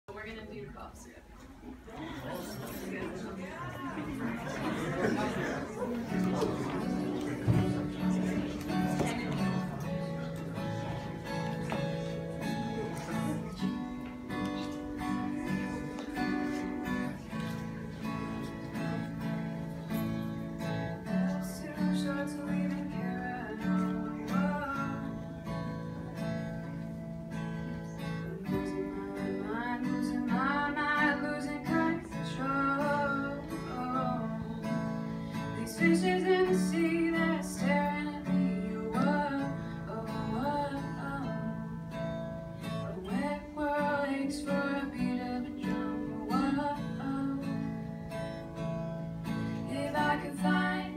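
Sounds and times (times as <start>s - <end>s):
strummed acoustic guitar: 4.1s - 50.9s
person singing: 21.0s - 26.4s, 28.0s - 41.8s.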